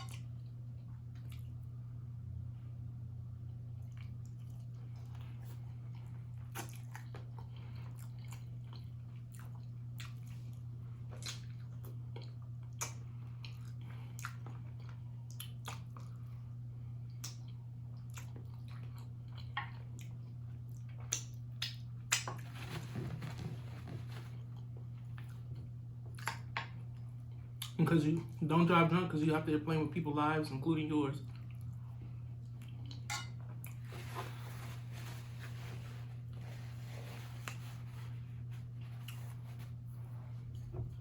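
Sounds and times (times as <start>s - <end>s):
steady low hum: 0.0s - 41.0s
chewing food: 3.7s - 22.6s, 24.3s - 28.4s, 31.2s - 33.9s
wet mouth clicks and smacks: 15.3s - 16.0s, 20.8s - 22.4s.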